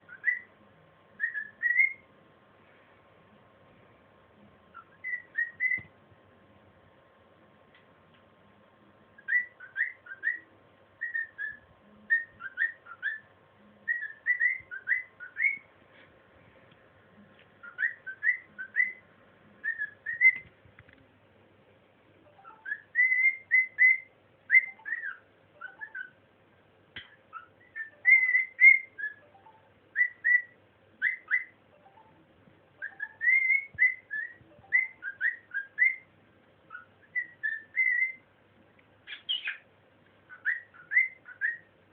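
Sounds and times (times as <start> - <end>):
cockatiel whistling a tune: 0.1 - 0.5, 1.2 - 2.0, 4.7 - 5.9, 9.2 - 13.3, 13.9 - 15.7, 17.6 - 19.0, 19.6 - 20.5, 22.4 - 26.2, 27.3 - 32.0, 32.8 - 36.1, 36.7 - 38.2, 39.1 - 39.6, 40.3 - 41.7.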